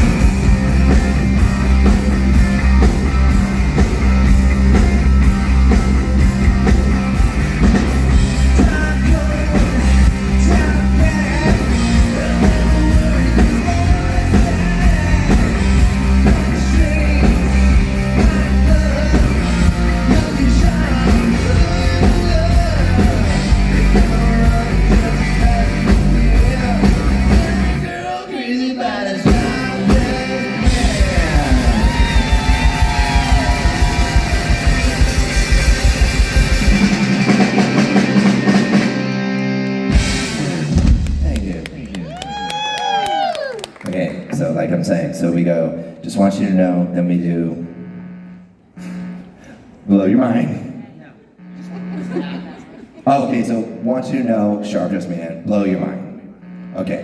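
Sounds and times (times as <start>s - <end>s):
live rock band: 0.0s - 43.8s
person singing: 8.4s - 34.8s.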